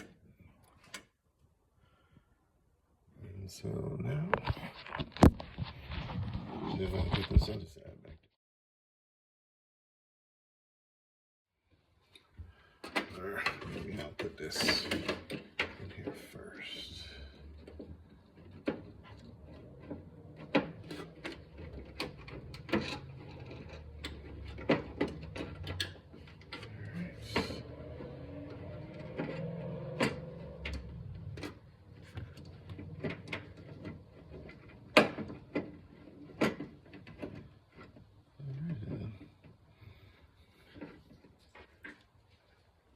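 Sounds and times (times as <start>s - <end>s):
small parts clicking and knocking: 17.2s - 42.6s.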